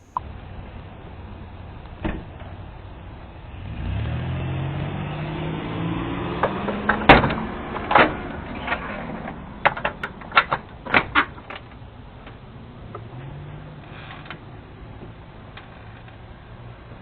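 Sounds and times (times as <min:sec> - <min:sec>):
car engine driving off: 0:00.0 - 0:17.0
sharp clicks and knocks: 0:06.4 - 0:13.1.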